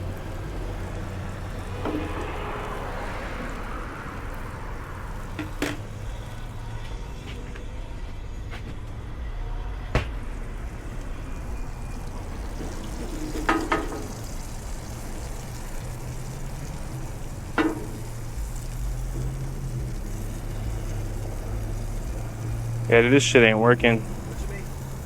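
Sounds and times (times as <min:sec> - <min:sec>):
food sizzling in a pan: 0:00.0 - 0:06.6, 0:10.3 - 0:25.0
low hum: 0:00.0 - 0:22.9
spatula knocking on pan: 0:13.3 - 0:14.2, 0:17.6 - 0:18.2.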